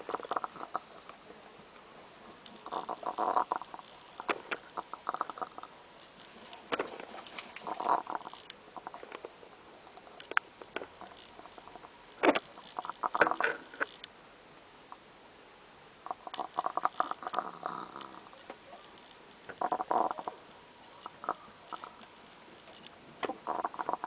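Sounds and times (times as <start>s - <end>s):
hen snore-like rattle: 0.0s - 0.9s, 2.6s - 5.7s, 7.0s - 9.0s, 16.0s - 18.4s, 19.5s - 20.4s, 23.4s - 24.0s.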